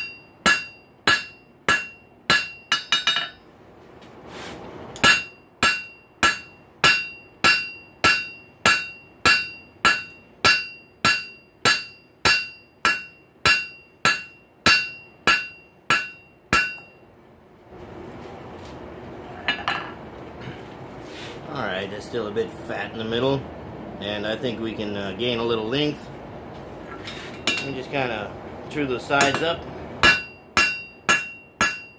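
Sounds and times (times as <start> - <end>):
hammer ringing on anvil: 0.0 - 3.4, 5.0 - 17.0, 27.4 - 27.8, 29.1 - 31.9.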